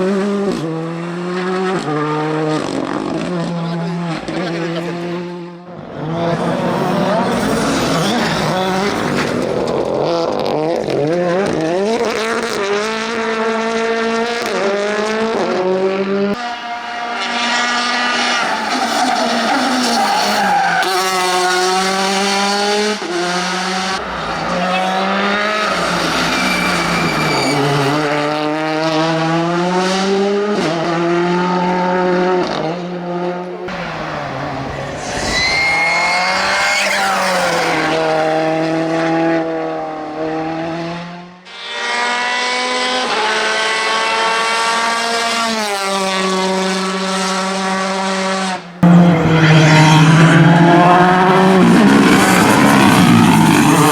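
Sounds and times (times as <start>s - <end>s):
rally car engine revving: 0.0s - 53.9s
tyre squeal: 6.1s - 10.1s, 16.4s - 22.9s, 23.5s - 28.6s, 33.7s - 38.9s.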